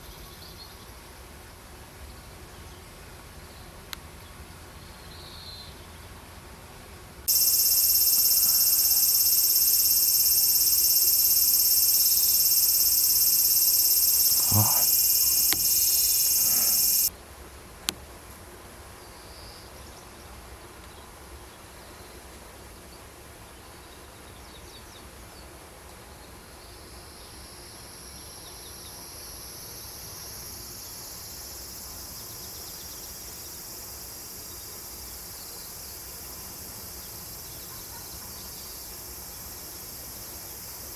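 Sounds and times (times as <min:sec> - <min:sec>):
high-pitched insect chorus: 0:07.3 - 0:17.1.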